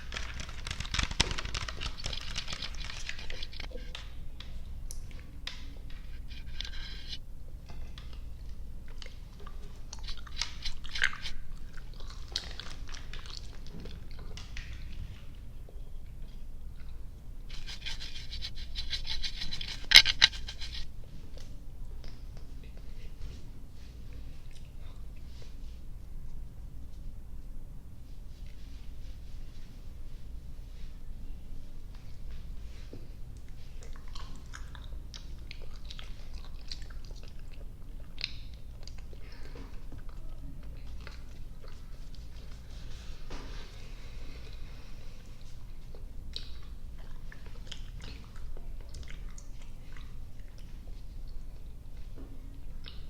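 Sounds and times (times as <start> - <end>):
chewing sticky candy: 0.0 - 4.1, 8.0 - 22.8, 33.2 - 42.8, 45.2 - 53.0.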